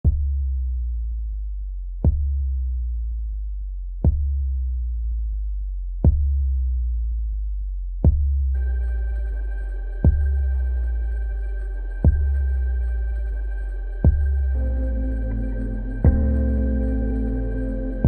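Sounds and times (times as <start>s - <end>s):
deep synthesized bass pulse: 0.0s - 18.0s
sustained synth chords: 8.6s - 18.0s.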